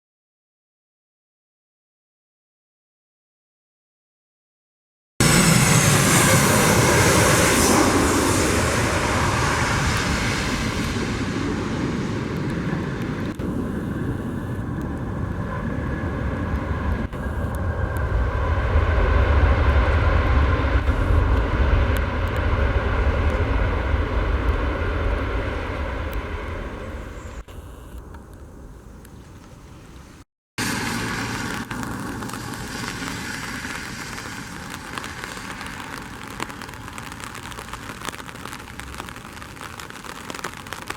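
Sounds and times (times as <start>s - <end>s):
jet engines hissing and rumbling: 5.2s - 39.2s.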